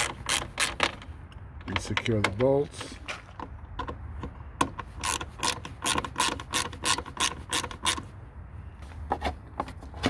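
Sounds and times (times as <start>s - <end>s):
socket ratchet clicking: 4.6s - 8.1s.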